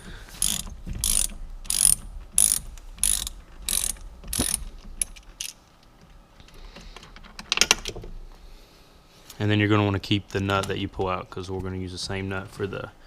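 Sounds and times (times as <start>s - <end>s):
ratchet wrench clicking: 0.4s - 5.6s.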